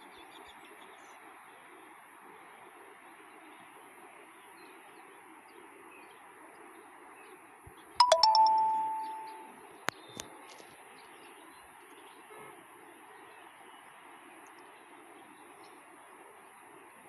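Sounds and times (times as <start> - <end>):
bright two-tone chime: 8.0 - 9.5.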